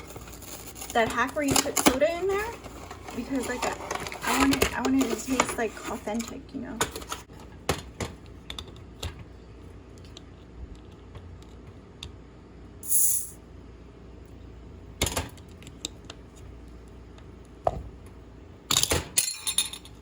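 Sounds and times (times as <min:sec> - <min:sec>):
soda bottle hiss: 0:12.8 - 0:13.4.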